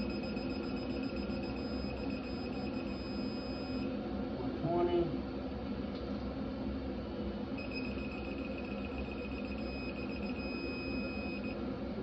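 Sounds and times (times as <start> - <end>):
torque wrench beeping: 7.6 - 11.6.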